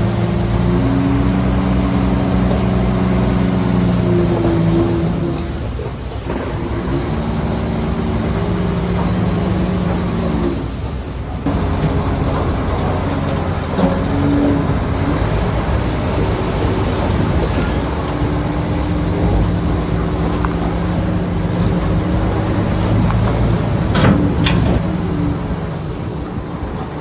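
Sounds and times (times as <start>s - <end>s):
diesel machinery running: 0.0s - 27.0s
scraping: 11.4s - 26.1s
metallic clanks: 11.4s - 26.4s.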